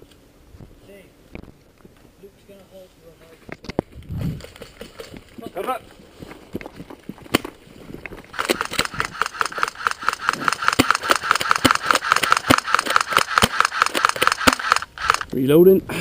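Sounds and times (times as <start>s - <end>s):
airsoft gun full-auto burst: 8.3s - 15.3s
sharp crack: 8.3s - 15.4s.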